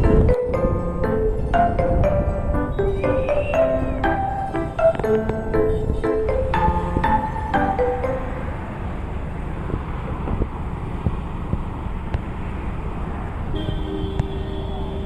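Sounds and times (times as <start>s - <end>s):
music notes: 0.0s - 8.8s
steady tone: 0.0s - 9.6s
low rumbling outdoor noise: 0.0s - 14.0s.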